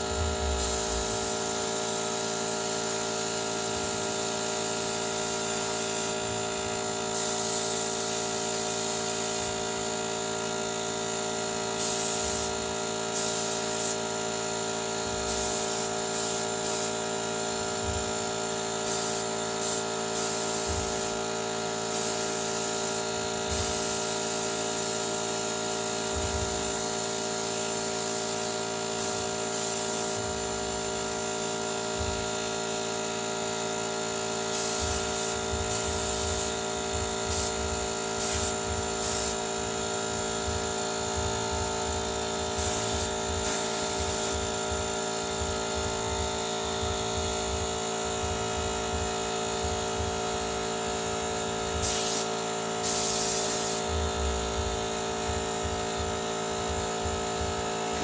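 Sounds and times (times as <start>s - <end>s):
air compressor motor hum: 0.0s - 58.0s
air hissing bursts: 0.5s - 6.4s, 7.1s - 9.6s, 11.8s - 14.1s, 15.1s - 17.0s, 18.8s - 30.3s, 34.5s - 36.6s, 37.3s - 39.8s, 42.6s - 44.5s, 51.8s - 54.2s.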